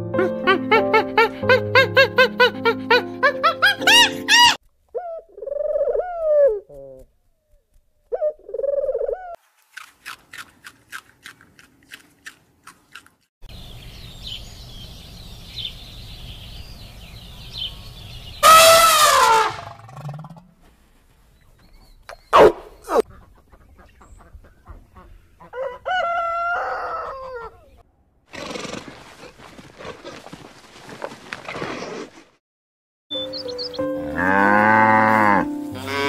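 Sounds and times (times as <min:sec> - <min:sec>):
loud call falling in pitch: 0:18.4 - 0:19.6
faint high chirping: 0:33.1 - 0:34.0.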